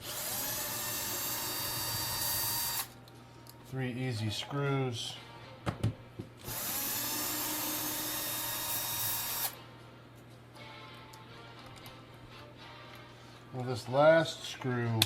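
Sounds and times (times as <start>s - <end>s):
power drill running: 0.0s - 2.9s, 6.4s - 9.6s.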